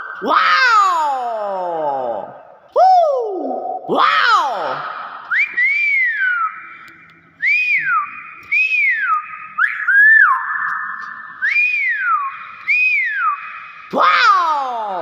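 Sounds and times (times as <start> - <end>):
bird whistling: 5.3 - 14.0.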